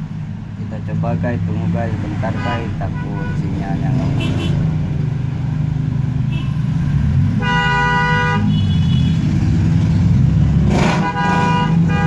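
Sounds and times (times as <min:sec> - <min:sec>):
road traffic rumble: 0:00.0 - 0:12.0
vehicle horn: 0:02.2 - 0:04.7, 0:06.3 - 0:06.6, 0:07.4 - 0:09.3, 0:10.8 - 0:12.0.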